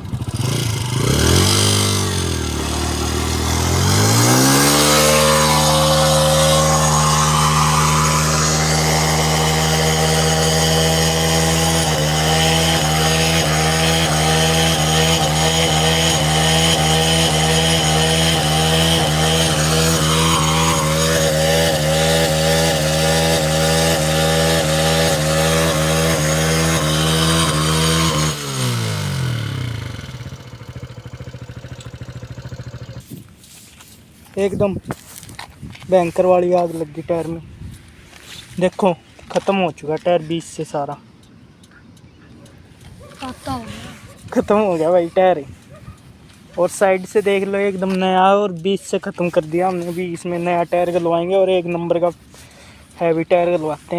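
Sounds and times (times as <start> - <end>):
motorcycle engine revving high: 0.0 - 33.1.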